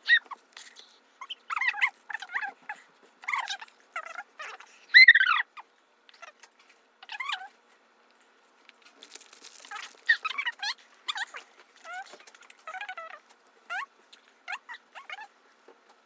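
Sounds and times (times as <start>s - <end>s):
dog whining: 1.2s - 6.4s, 9.7s - 13.9s, 14.5s - 15.3s.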